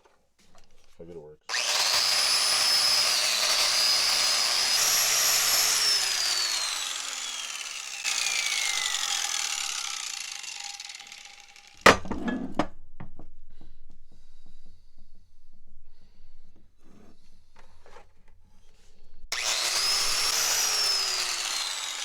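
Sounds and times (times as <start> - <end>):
wire brush grinder whining: 1.5 - 11.9, 19.3 - 22.0.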